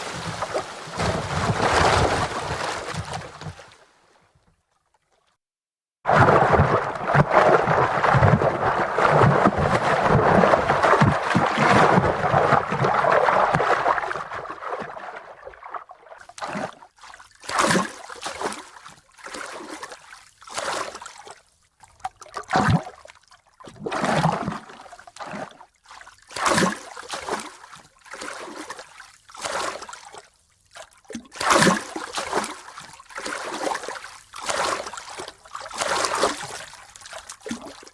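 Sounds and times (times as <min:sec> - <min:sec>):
water rushing: 0:00.0 - 0:03.2
water sloshing and gurgling: 0:00.0 - 0:05.4, 0:06.1 - 0:37.9.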